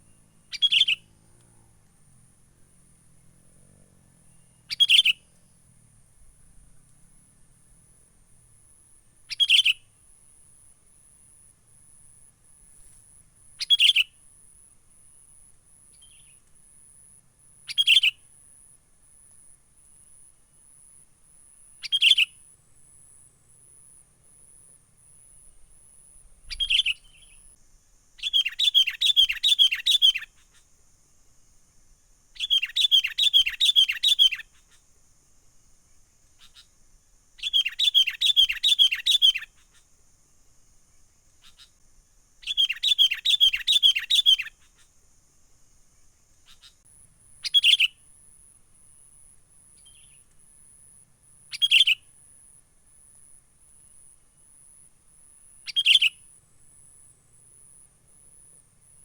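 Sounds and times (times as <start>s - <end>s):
short bird calls: 0.0s - 1.3s, 4.2s - 5.7s, 9.2s - 10.0s, 13.6s - 14.2s, 17.6s - 18.3s, 21.8s - 22.5s, 26.4s - 27.5s, 28.2s - 30.7s, 32.4s - 34.8s, 37.4s - 39.9s, 42.4s - 44.9s, 46.4s - 48.2s, 51.4s - 52.2s, 55.6s - 56.3s
bird chattering call: 0.5s - 1.1s, 4.6s - 5.3s, 9.3s - 9.8s, 26.5s - 27.4s, 28.2s - 30.3s, 32.4s - 34.4s, 37.4s - 39.5s, 42.4s - 44.5s, 47.4s - 48.0s, 51.5s - 52.0s, 55.7s - 56.3s.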